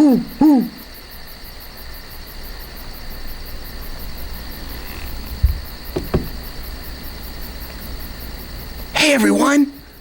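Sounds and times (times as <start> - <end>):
crickets chirping: 0.0 - 10.0
low thump: 5.4 - 6.4
short knocks: 5.4 - 6.6.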